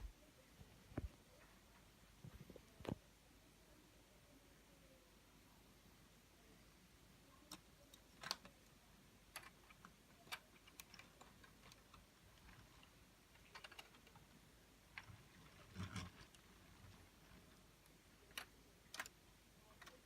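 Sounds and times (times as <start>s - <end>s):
plastic pieces clicking together: 7.5s - 8.7s, 9.3s - 17.6s, 18.2s - 20.0s.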